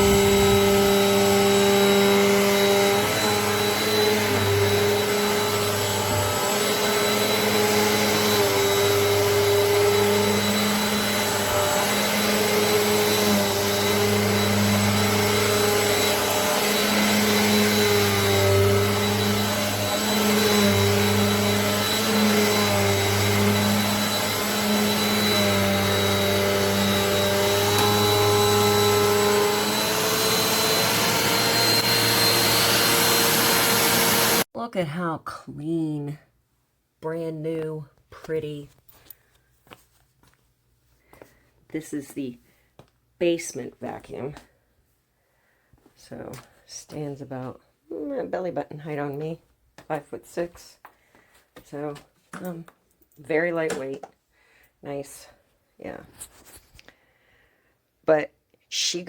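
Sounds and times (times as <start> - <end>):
upright vacuum cleaner running: 0.0 - 34.5.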